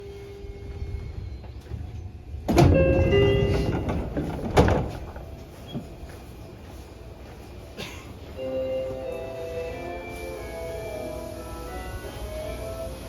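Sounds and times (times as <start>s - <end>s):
low door-closing chime: 2.0s - 5.0s.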